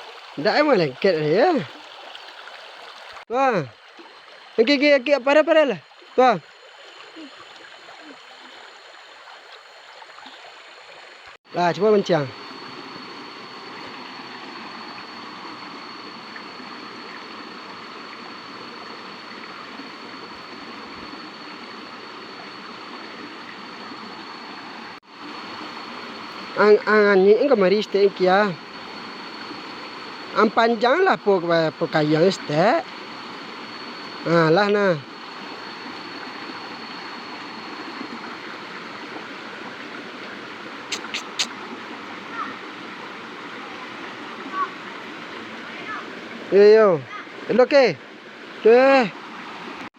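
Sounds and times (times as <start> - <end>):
flowing water rushing: 0.0 - 49.9
faint high steady tone: 11.5 - 41.5
short sharp clicks: 40.9 - 41.5.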